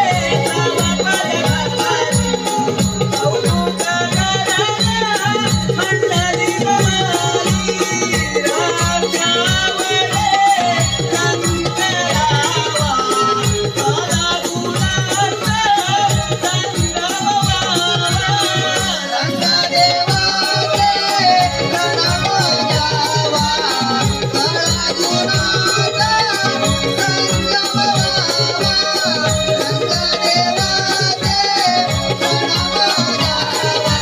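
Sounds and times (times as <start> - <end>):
drum steady beat: 0.0 - 34.0
rattling percussion: 0.0 - 34.0.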